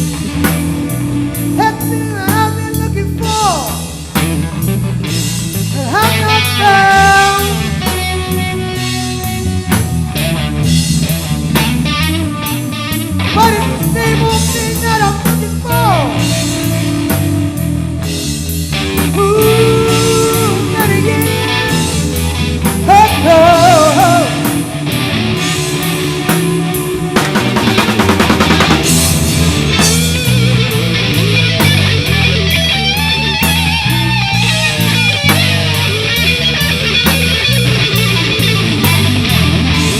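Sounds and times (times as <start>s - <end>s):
bass line: 0.0s - 39.9s
drums: 0.0s - 39.9s
electric guitar lead solo: 0.0s - 39.9s.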